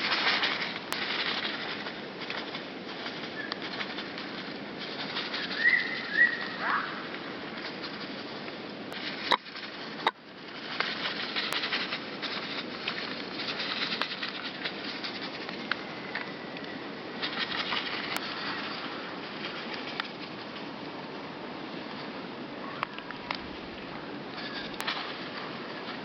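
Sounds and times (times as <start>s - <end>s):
bird wings flapping: 0.0s - 16.4s, 17.2s - 20.7s
steady hiss: 0.0s - 26.0s.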